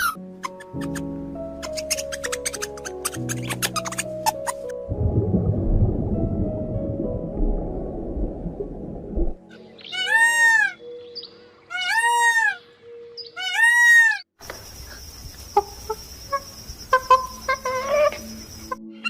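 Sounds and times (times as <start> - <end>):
animal high cries: 9.9 - 10.8, 11.7 - 12.6, 13.4 - 14.2.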